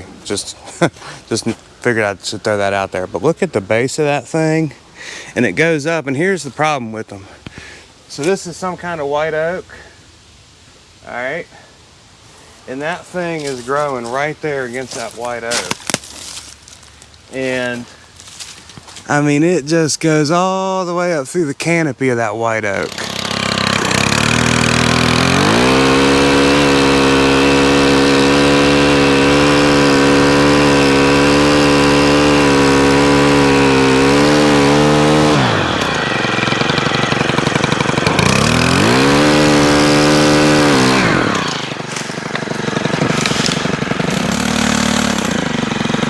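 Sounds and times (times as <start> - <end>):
pole saw engine revving: 22.7 - 46.0.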